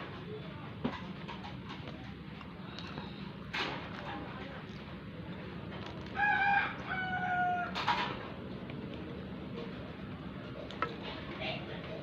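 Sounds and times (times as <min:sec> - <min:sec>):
rooster crowing: 0:06.2 - 0:07.8.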